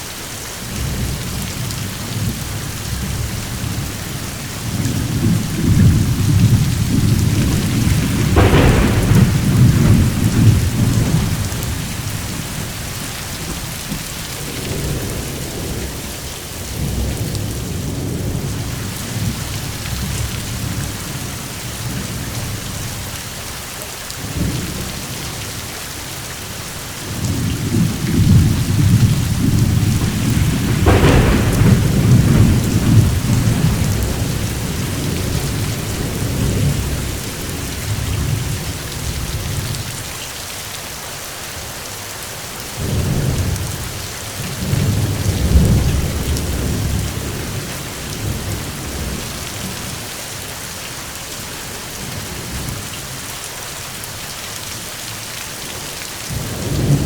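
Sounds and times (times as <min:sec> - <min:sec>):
heavy rain: 0:00.0 - 0:57.0
rolling thunder: 0:00.7 - 0:22.6, 0:27.0 - 0:40.0, 0:42.8 - 0:50.1, 0:56.3 - 0:57.0
sharp thunder crack: 0:04.5 - 0:19.3, 0:27.2 - 0:39.3.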